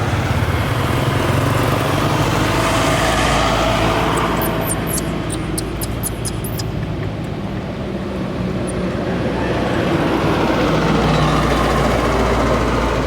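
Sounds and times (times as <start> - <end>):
motor engine running: 0.0 - 7.6, 10.4 - 13.0
short high squeaks: 4.0 - 6.9.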